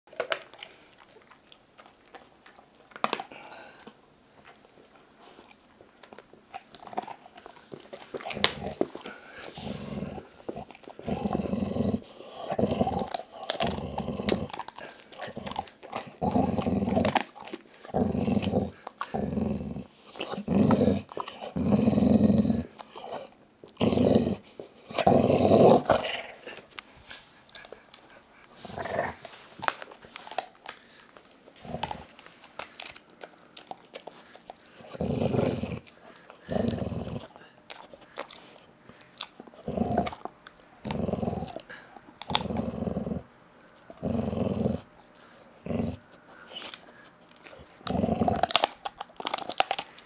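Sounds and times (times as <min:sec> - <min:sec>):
dog gnawing on a bone: 0:00.1 - 0:50.0
dog growling: 0:08.1 - 0:26.6, 0:27.5 - 0:29.3, 0:31.6 - 0:32.2, 0:33.8 - 0:38.4, 0:39.5 - 0:43.3, 0:43.9 - 0:45.0, 0:45.6 - 0:46.8, 0:47.6 - 0:49.9.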